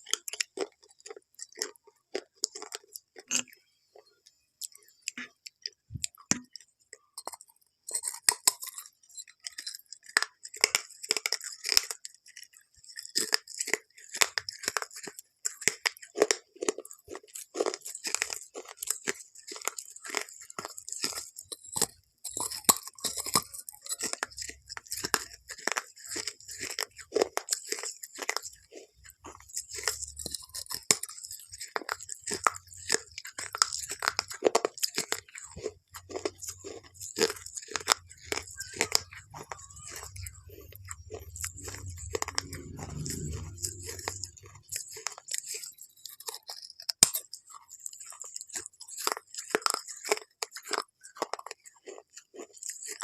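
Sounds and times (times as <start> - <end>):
crunching and chewing food: 0.0 - 53.0.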